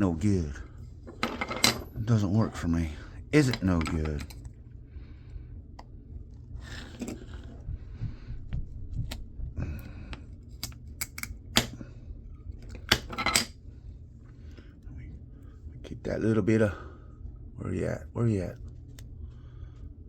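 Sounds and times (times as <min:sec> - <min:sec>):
low hum: 0:00.0 - 0:20.0
metal parts and tools clinking: 0:01.1 - 0:02.0.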